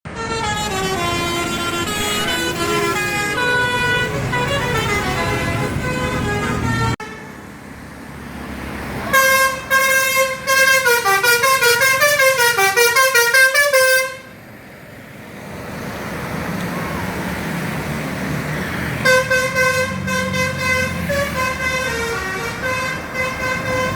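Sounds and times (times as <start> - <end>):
multi-tone bus horn melody: 0.0 - 7.5, 9.0 - 14.4, 19.0 - 23.9
engine rumble: 0.1 - 23.9
staccato horn notes: 0.3 - 7.2.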